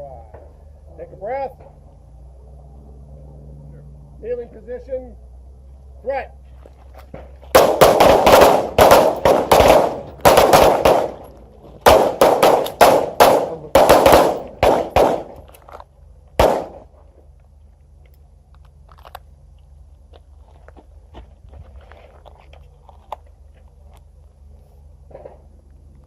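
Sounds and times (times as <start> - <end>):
pistols firing: 7.5 - 15.5, 16.4 - 16.9.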